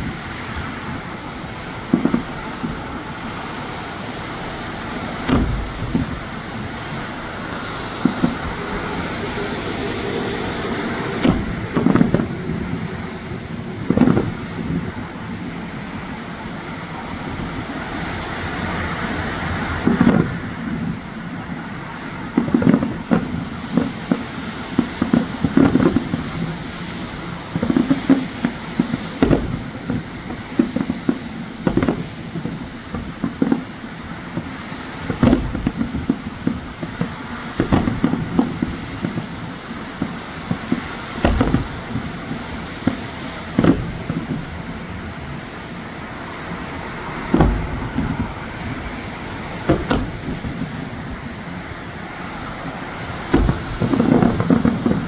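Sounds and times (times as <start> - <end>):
fireworks booming: 0.0 - 55.0
steady rushing noise: 0.0 - 55.0
low rumble: 4.6 - 16.1.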